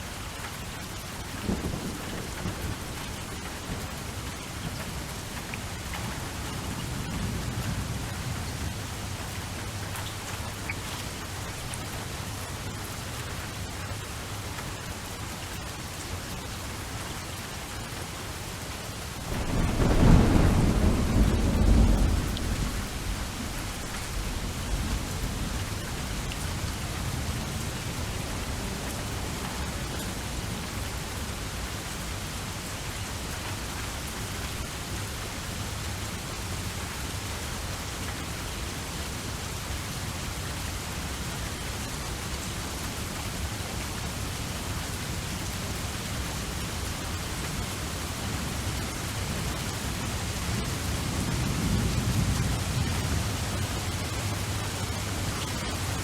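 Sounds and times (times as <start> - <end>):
steady rain: 0.0 - 56.0
thunder rumbling: 19.2 - 31.2.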